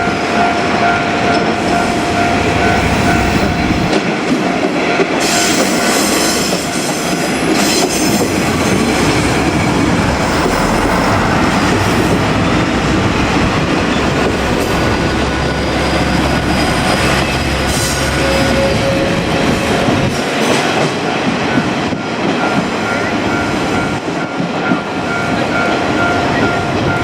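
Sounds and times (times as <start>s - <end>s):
diesel train passing: 0.0s - 27.0s
train wheels on rails: 0.0s - 27.0s.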